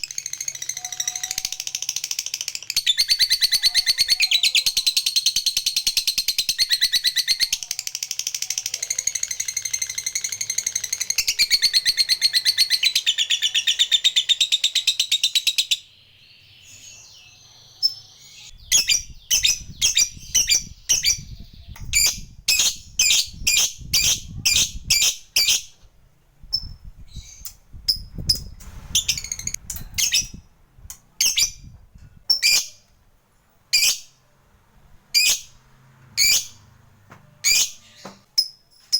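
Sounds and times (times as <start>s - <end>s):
lovebird chattering trill: 0.0s - 15.9s, 16.8s - 25.7s.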